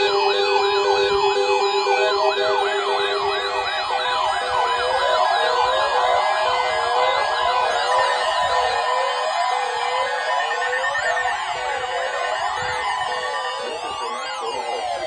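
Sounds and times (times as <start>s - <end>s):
siren warble: 0.0s - 8.3s
steady low siren tone: 0.0s - 9.1s
electronic sirens sweeping: 0.0s - 15.0s.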